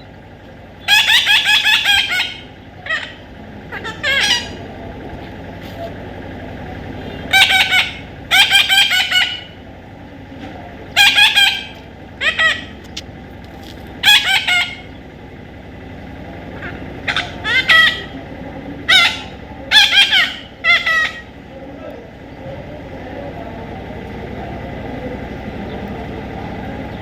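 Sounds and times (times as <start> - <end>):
parrot calling: 0.8 - 4.8, 7.1 - 9.7, 10.9 - 13.0, 14.0 - 15.1, 16.5 - 22.4.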